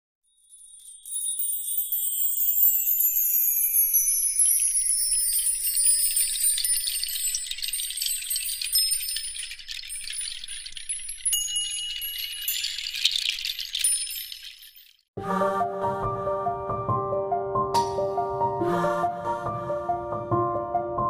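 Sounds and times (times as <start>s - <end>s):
shimmering chimes and jingling: 0.2s - 15.2s.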